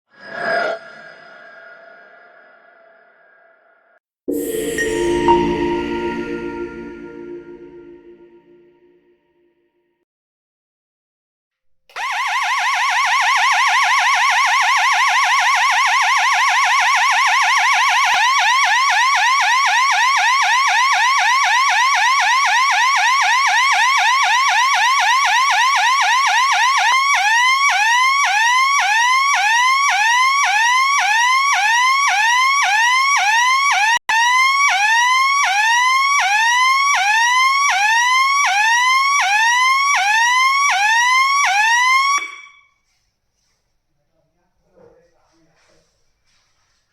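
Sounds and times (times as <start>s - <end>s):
electronic alarm hooter whooping: 12.0s - 42.7s.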